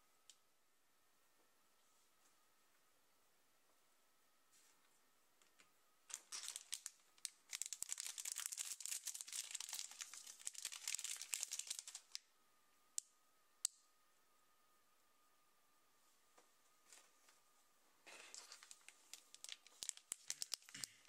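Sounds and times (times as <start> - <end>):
plastic packet crinkling and tearing: 6.1 - 12.2, 18.3 - 21.0.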